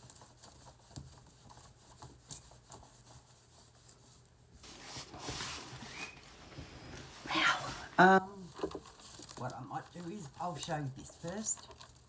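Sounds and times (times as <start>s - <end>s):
plastic film crinkling: 4.6s - 12.0s.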